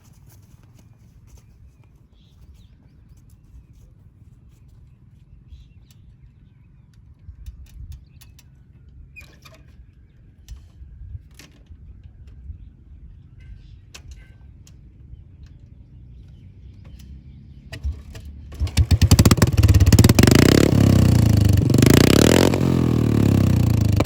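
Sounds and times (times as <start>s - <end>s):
motorcycle engine exhaust beat: 18.5s - 24.0s.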